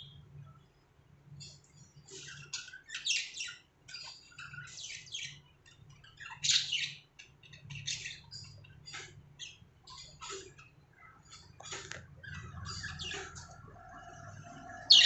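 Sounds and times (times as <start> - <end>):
budgerigars chirping: 1.4 - 5.4, 6.1 - 15.0
budgerigars squawking: 14.2 - 15.0.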